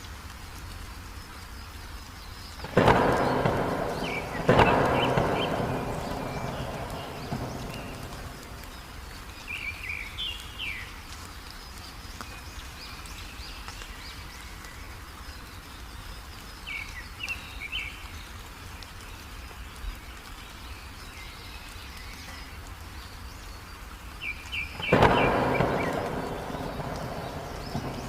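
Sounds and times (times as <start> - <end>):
rain hiss: 0.0 - 28.0
birds chirping: 2.2 - 18.4, 19.1 - 28.0
sudden loud burst of noise: 2.7 - 9.3, 24.8 - 28.0.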